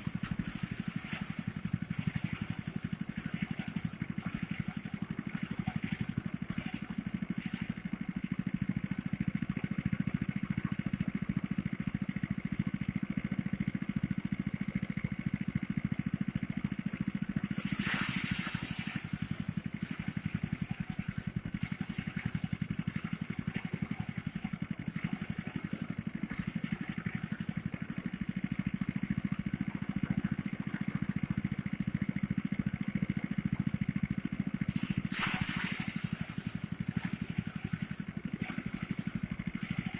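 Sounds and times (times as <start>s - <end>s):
small engine running: 0.0s - 39.9s
burst of hissing: 17.6s - 19.1s, 34.7s - 36.4s.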